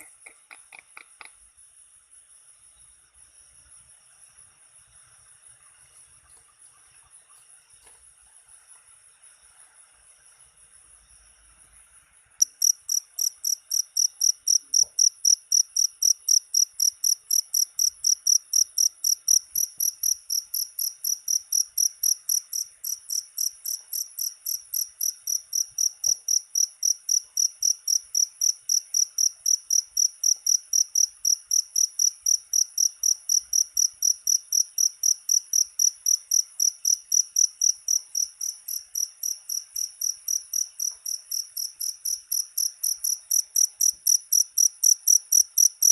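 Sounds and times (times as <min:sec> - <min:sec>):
cricket chirping: 0:00.0 - 0:45.9.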